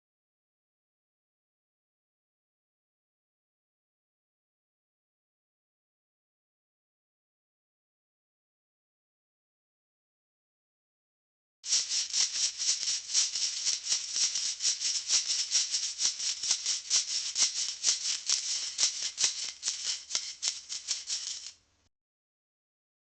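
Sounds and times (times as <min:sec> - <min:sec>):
wasabi root grating: 0:11.7 - 0:21.5.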